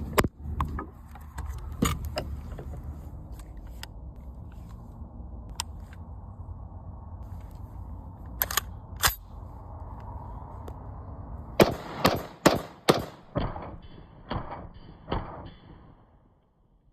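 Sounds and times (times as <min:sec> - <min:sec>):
gunshots: 0:11.6 - 0:16.0.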